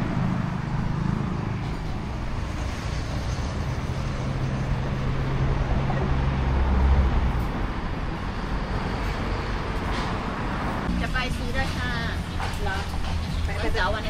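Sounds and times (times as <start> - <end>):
street traffic din: 0.0 - 14.0
vehicle engine hum: 0.0 - 14.0.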